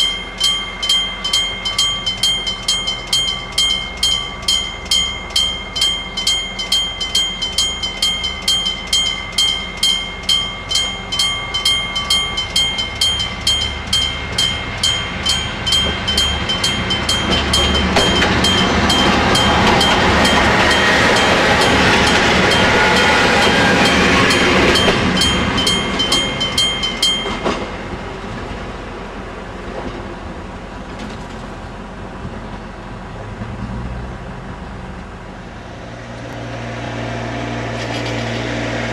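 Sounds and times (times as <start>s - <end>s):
electric bell crossing alarm ringing: 0.0s - 27.6s
train rumbling over crossing: 0.0s - 38.9s.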